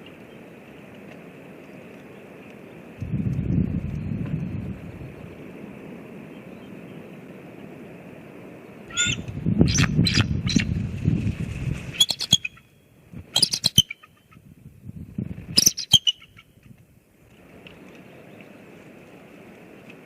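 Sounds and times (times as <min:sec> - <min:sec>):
low rumble: 0:03.0 - 0:05.8, 0:09.2 - 0:12.0
eagles high-pitched chattering: 0:08.9 - 0:10.7, 0:12.0 - 0:12.6
faint steady hiss: 0:14.2 - 0:20.0.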